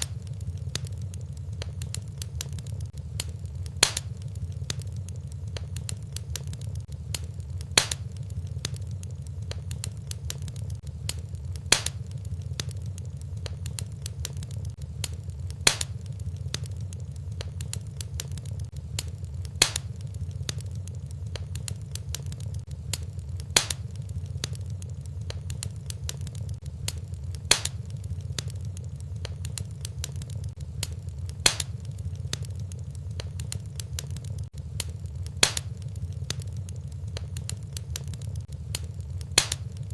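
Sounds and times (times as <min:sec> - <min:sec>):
sharp popping of fire: 0:00.0 - 0:39.9
wood fire crackling: 0:00.0 - 0:39.9.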